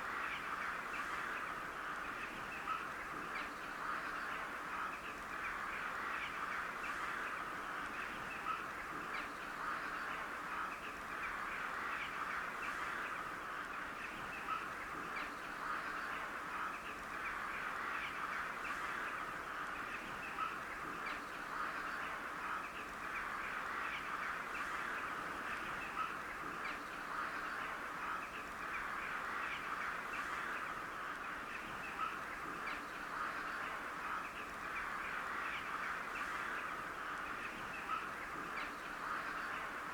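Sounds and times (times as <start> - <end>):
flock of crows cawing: 9.5 - 14.0, 21.4 - 39.8.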